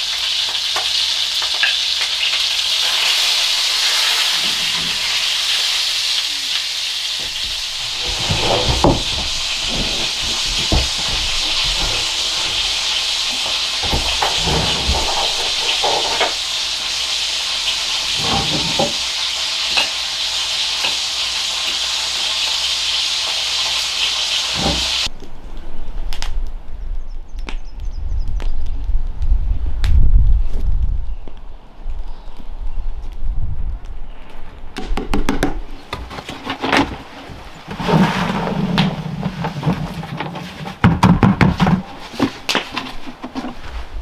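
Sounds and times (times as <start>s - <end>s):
food sizzling in a pan: 0.0s - 25.1s
cooking utensils clattering: 0.2s - 25.1s, 35.6s - 43.8s.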